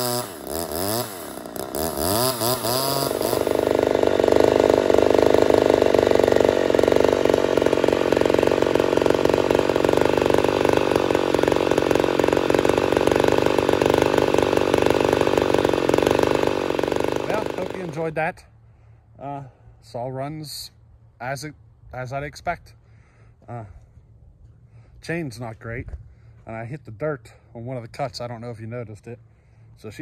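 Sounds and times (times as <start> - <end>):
chainsaw revving: 0.0 - 18.2.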